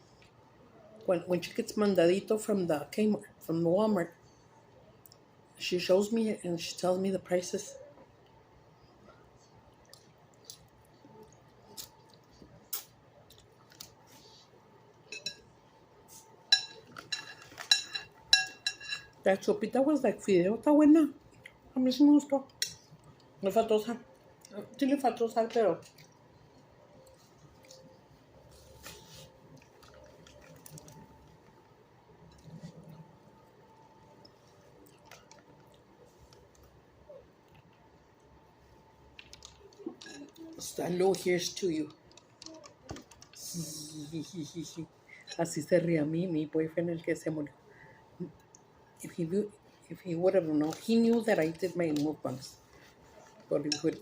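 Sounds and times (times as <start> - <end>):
faint chewing: 7.7 - 18.3, 25.8 - 43.4
spoon clinking against bowl: 15.1 - 15.4.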